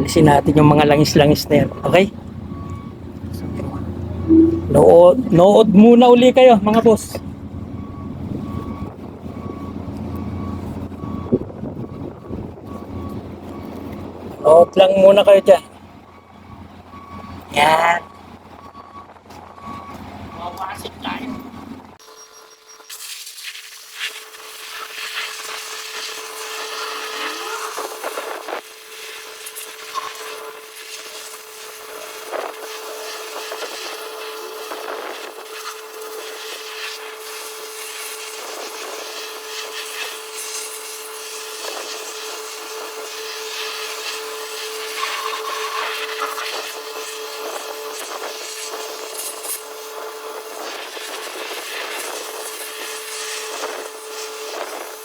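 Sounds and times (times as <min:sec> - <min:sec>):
steady hum: 0:03.9 - 0:06.1.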